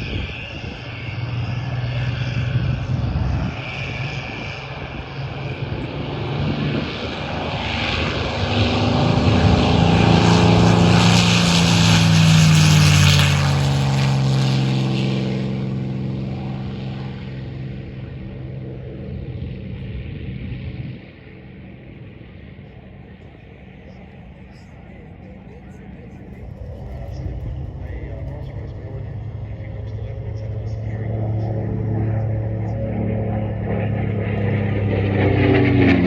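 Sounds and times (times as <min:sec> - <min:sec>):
propeller aircraft engine passing: 0:00.0 - 0:36.0.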